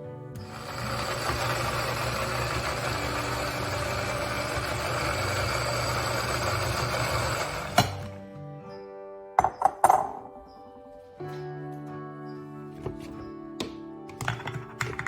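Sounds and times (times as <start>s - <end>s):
electric blender grinding: 0.4s - 8.2s.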